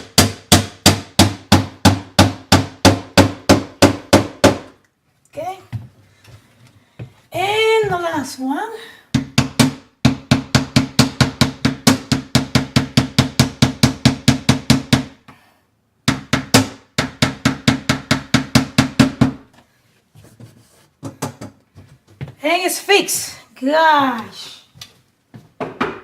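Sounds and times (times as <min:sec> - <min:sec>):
hammer tapping small nails: 0:16.0 - 0:19.5.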